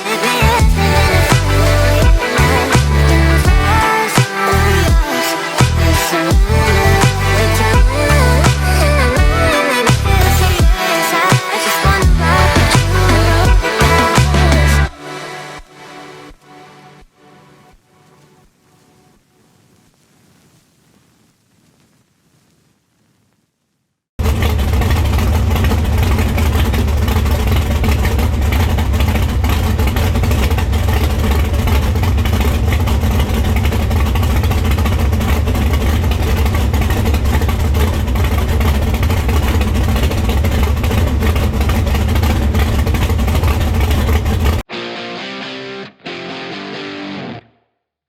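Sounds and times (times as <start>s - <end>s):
loud racing car engine running: 0.4s - 3.9s, 4.6s - 5.0s, 5.6s - 10.7s, 11.8s - 14.9s, 24.2s - 44.6s.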